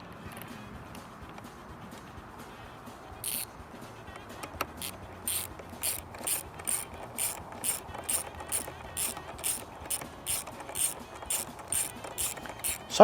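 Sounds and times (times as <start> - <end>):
ratchet wrench clicking: 3.2 - 3.5, 4.1 - 13.0.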